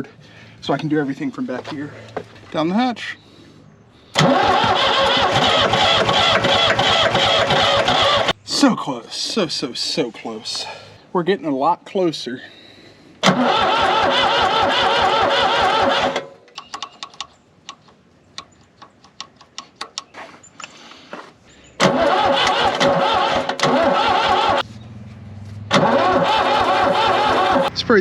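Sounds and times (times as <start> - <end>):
diesel engine cranking: 4.1 - 11.0, 13.2 - 20.0, 21.6 - 28.0.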